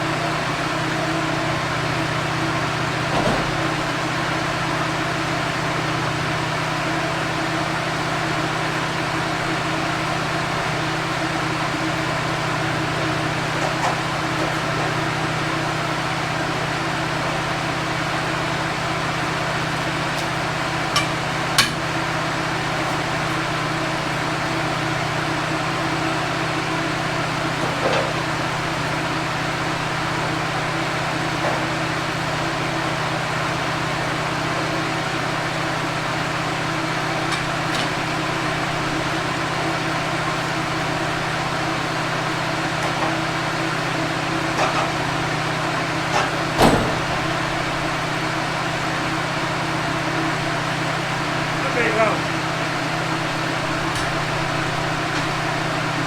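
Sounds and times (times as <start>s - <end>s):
engine running steadily: 0.0s - 56.0s.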